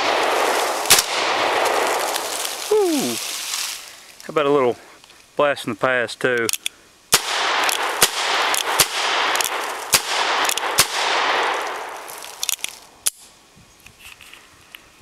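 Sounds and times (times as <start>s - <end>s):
gunshots: 0.0s - 2.4s, 7.1s - 12.0s.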